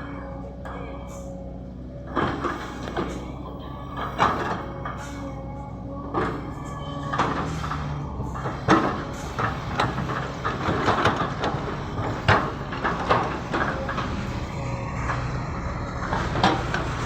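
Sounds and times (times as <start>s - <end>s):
excavator diesel engine running: 0.0s - 17.0s
metal clanks and knocks: 2.1s - 5.5s, 6.1s - 17.0s.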